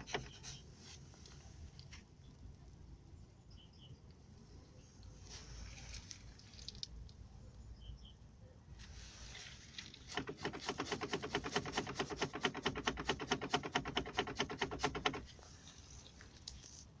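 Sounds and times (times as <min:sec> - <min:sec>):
rapid knocking from car axle: 0:10.1 - 0:15.3.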